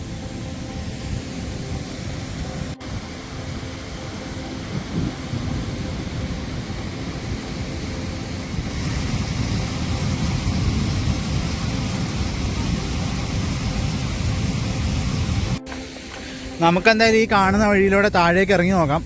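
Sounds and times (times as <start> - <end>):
waterfall roaring: 0.0 - 16.8
wind rumbling on microphone: 0.0 - 19.0.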